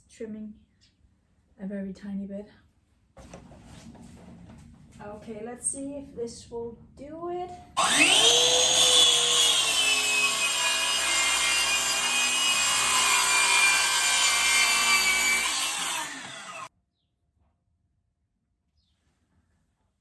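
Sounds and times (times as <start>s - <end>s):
circular saw cutting wood: 7.8s - 16.7s.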